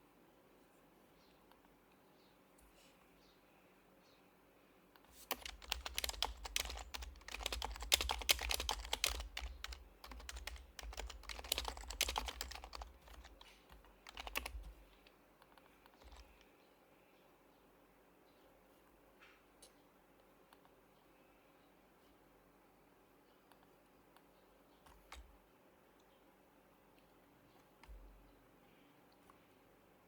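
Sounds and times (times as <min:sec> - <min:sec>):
soft muted keyboard clacks: 0:05.1 - 0:16.5, 0:23.5 - 0:25.4.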